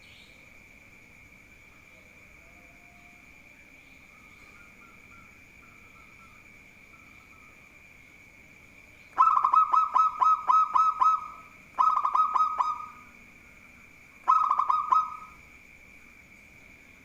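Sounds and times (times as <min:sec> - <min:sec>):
dove cooing: 0:09.2 - 0:13.1, 0:14.3 - 0:15.4.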